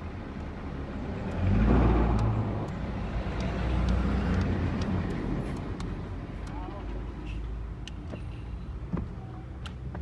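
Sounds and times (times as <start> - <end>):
road vehicle passing: 0.0 - 7.8.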